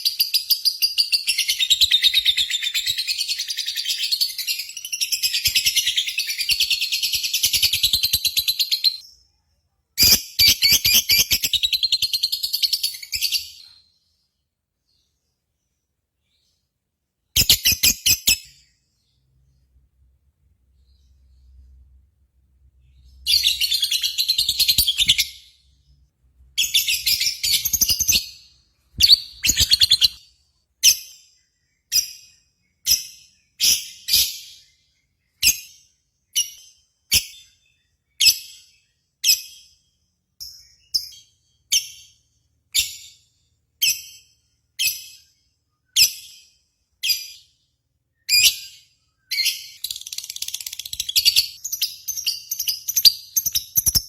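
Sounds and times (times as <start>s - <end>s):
bird chattering and chirping: 29.0s - 30.2s, 49.4s - 54.0s.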